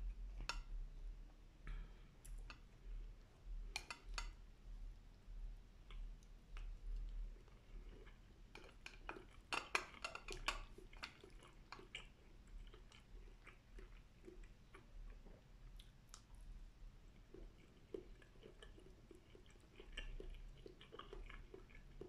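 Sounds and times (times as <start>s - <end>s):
chewing food wet smacks: 1.7s - 4.4s, 5.1s - 22.0s.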